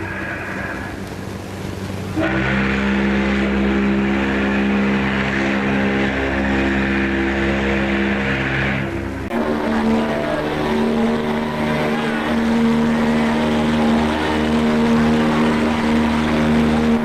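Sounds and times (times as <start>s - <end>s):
ship's horn blast: 0.0s - 17.0s.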